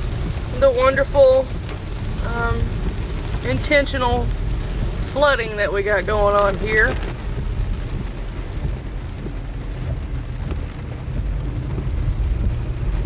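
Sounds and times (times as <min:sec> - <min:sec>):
car engine rumble: 0:00.0 - 0:13.0
rain on a car: 0:00.0 - 0:13.0
tyres on wet road: 0:00.0 - 0:13.0.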